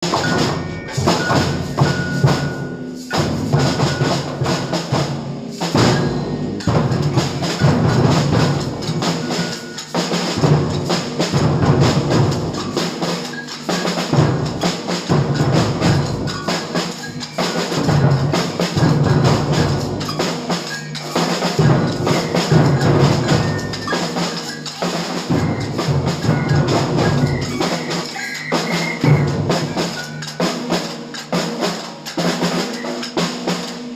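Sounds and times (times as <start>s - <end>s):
samba percussion band: 0.0s - 33.9s
snare drums and bells: 0.0s - 33.9s
deep bass drum beats: 5.7s - 9.3s, 21.6s - 23.9s.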